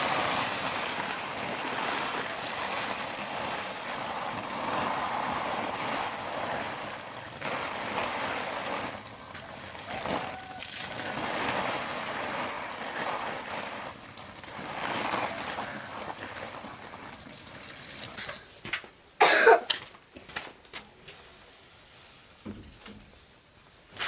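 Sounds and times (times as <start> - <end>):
person coughing: 19.2 - 19.8.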